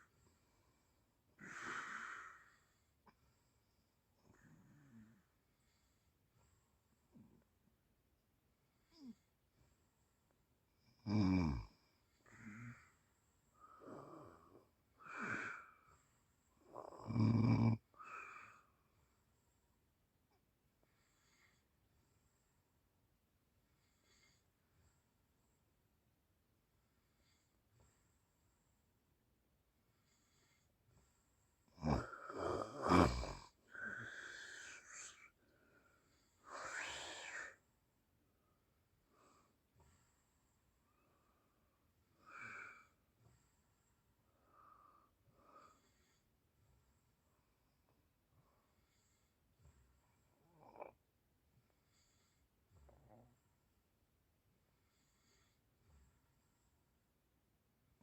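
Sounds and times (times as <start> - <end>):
soft breaths: 0.0 - 10.9, 11.6 - 17.0, 17.8 - 58.0
person snoring: 16.7 - 18.2, 31.7 - 35.4, 36.4 - 37.6, 50.3 - 51.0
long breathy breath: 33.6 - 37.7.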